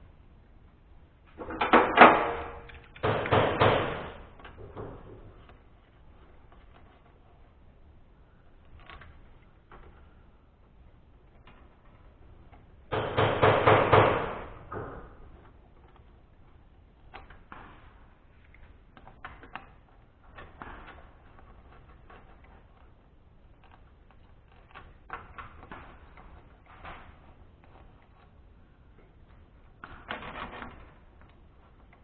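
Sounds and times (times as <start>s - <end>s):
rapid clicking of hand tools: 1.4s - 5.6s, 11.5s - 16.3s.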